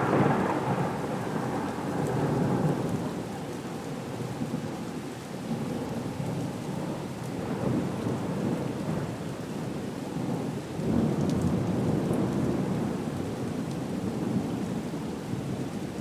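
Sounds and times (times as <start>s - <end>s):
rolling thunder: 0.0s - 3.1s
steady rain: 0.0s - 16.0s.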